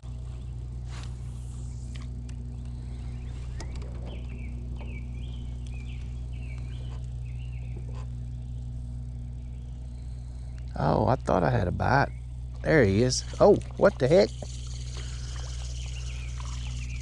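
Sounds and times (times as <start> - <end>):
steady low hum: 0.0 - 17.0
bird chirping: 2.5 - 10.7, 11.9 - 17.0.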